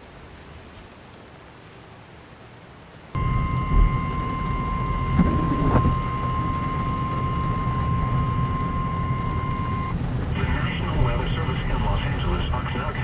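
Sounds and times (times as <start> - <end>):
high steady alert beep: 3.2 - 10.0
low rumble: 3.2 - 13.0.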